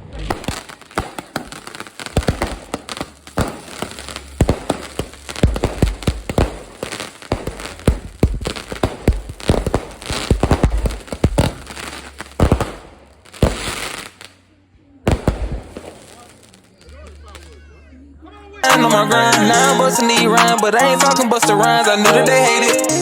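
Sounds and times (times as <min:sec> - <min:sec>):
fireworks bangs and crackles: 0:00.0 - 0:14.4, 0:15.0 - 0:17.6.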